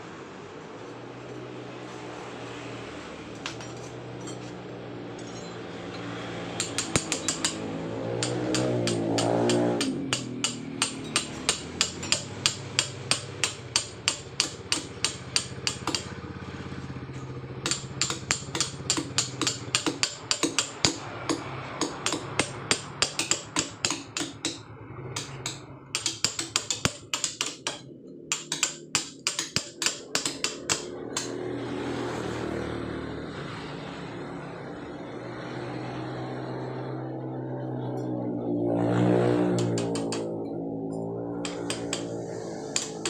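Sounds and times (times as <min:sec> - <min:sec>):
hammer striking chisel on stone: 0:03.4 - 0:04.5, 0:06.6 - 0:16.2, 0:17.6 - 0:24.6, 0:25.2 - 0:31.4, 0:39.6 - 0:40.3, 0:41.4 - 0:43.0.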